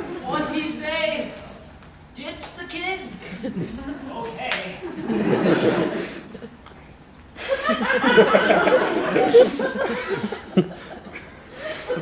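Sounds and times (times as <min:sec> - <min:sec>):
audience laughing: 0:03.2 - 0:06.6, 0:07.4 - 0:12.0.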